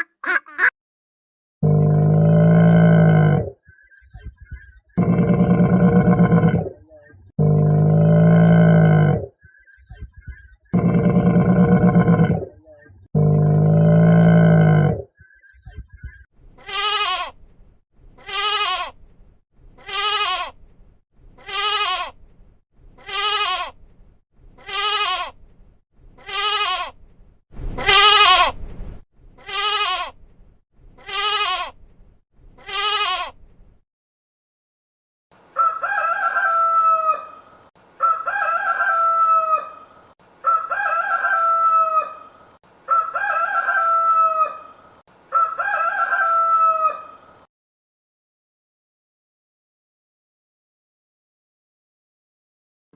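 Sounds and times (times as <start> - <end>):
goat bleating: 16.6 - 17.4, 18.2 - 19.0, 19.8 - 20.6, 21.4 - 22.2, 23.0 - 23.8, 24.6 - 25.4, 26.2 - 27.0, 27.8 - 28.6, 29.4 - 30.2, 31.0 - 31.8, 32.6 - 33.4
rooster crowing: 35.5 - 37.4, 38.0 - 47.2.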